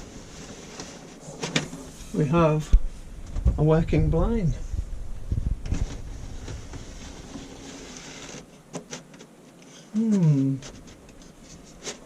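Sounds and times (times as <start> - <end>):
plastic blind clicking: 6.8 - 9.8.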